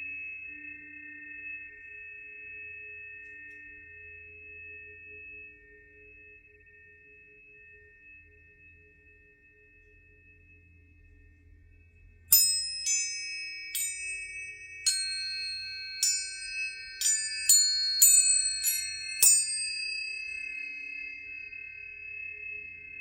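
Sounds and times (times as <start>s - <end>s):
tuning forks struck ringing: 12.3s - 23.0s.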